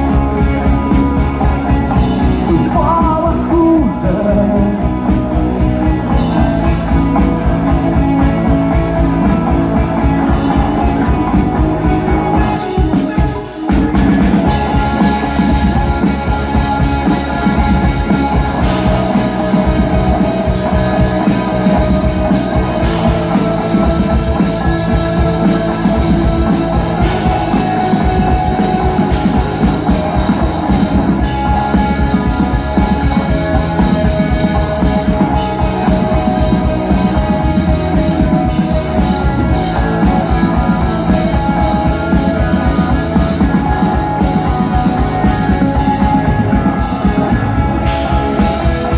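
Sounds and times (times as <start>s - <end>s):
instrumental rock music: 0.0s - 48.9s.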